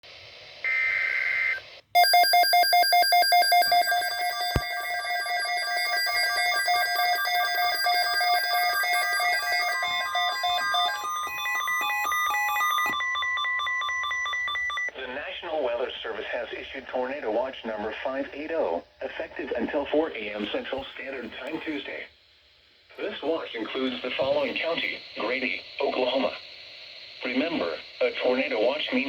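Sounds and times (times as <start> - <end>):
electronic alarm beeps: 0.7 - 14.9.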